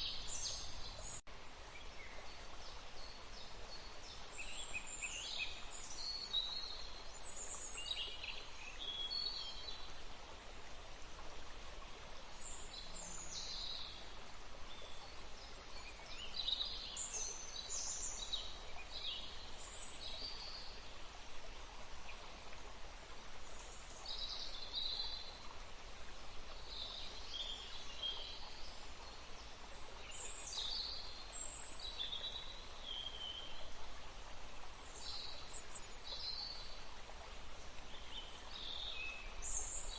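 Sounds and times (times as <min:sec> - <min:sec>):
running water: 0:00.0 - 0:39.9
songbirds chirping: 0:00.0 - 0:39.9.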